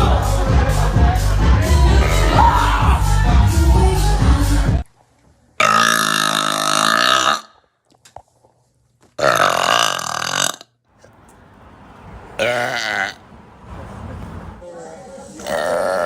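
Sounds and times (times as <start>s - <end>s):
music: 0.0s - 4.8s
long pitched burps: 1.8s - 2.4s, 5.6s - 7.6s, 9.2s - 10.8s, 12.4s - 13.2s, 15.4s - 16.0s.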